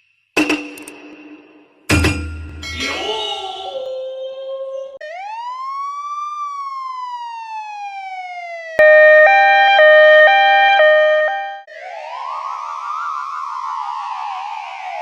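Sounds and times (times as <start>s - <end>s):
siren wail: 2.7s - 15.0s
two-tone hi-lo siren: 5.0s - 15.0s.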